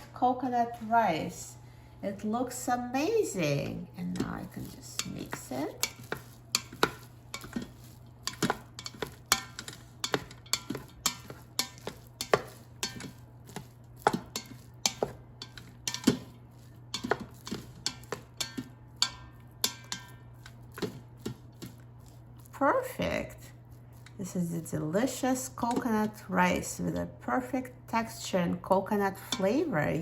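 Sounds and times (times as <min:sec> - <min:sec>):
utensil scraping metal pot: 0:03.3 - 0:26.2, 0:29.1 - 0:30.0.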